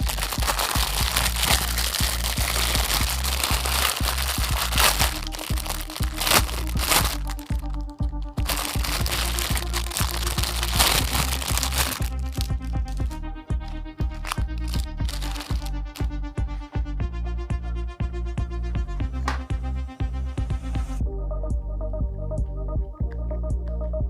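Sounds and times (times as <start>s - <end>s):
fidget toys crackling and clicking: 0.0s - 13.1s, 14.1s - 16.0s
background music with beat: 0.0s - 24.0s.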